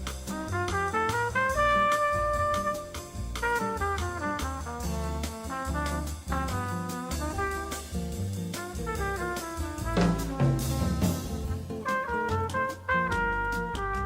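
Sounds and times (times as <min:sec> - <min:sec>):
upbeat jazz with brass: 0:00.0 - 0:14.0.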